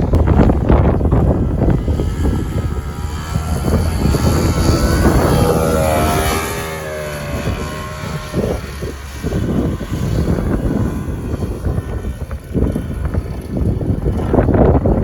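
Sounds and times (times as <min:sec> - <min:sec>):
snowmobile engine running: 0:00.0 - 0:15.0.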